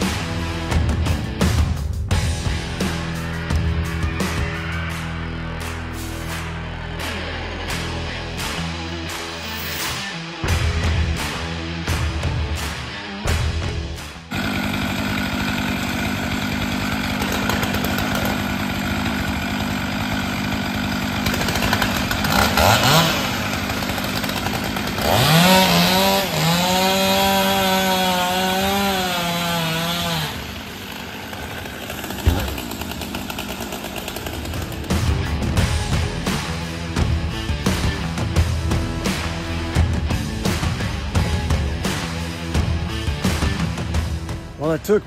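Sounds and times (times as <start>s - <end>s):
chainsaw running and revving: 0.0s - 5.0s, 5.6s - 44.5s
thump: 32.2s - 32.6s.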